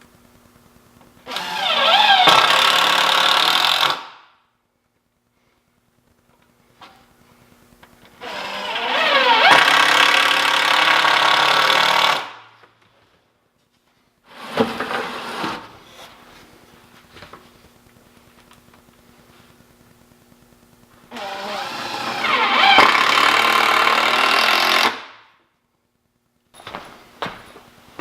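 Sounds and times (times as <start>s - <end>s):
power drill whine: 1.2s - 4.1s, 8.1s - 12.4s, 21.1s - 25.1s.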